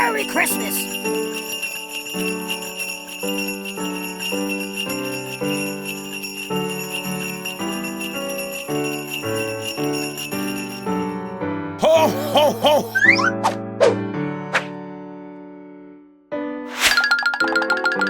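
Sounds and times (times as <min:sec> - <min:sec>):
jingle bells shaking: 0:00.0 - 0:12.9.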